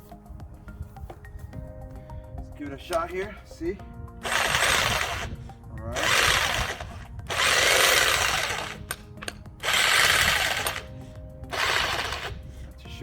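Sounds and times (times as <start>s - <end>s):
electric jackhammer bursts: 4.2s - 5.4s, 6.0s - 10.9s, 11.5s - 12.4s.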